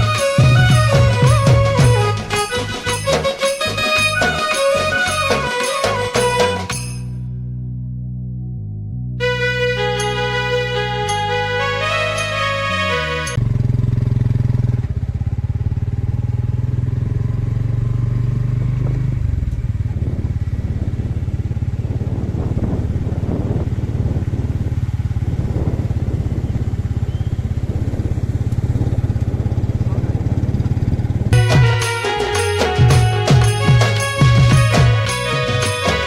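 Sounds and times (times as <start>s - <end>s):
vehicle engine throbbing: 0.0s - 36.0s.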